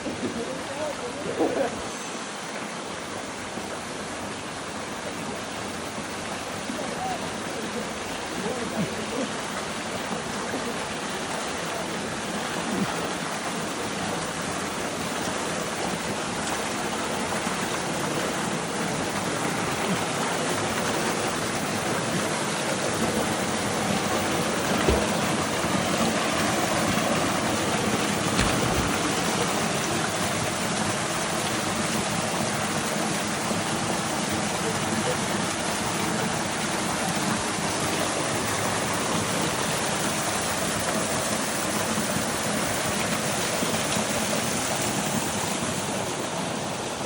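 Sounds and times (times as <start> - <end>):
waterfall rushing: 0.4 - 47.0
low thumps: 24.6 - 25.9, 28.2 - 29.5.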